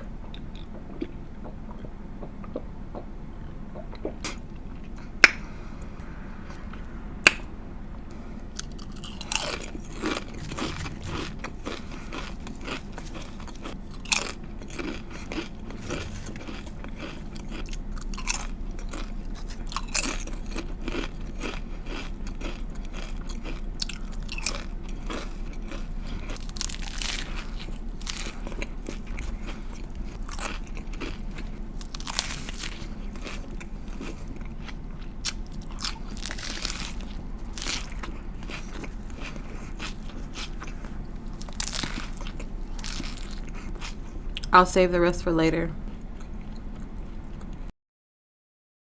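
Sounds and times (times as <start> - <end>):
crisp chewing crunches: 8.6 - 44.6, 45.8 - 47.7.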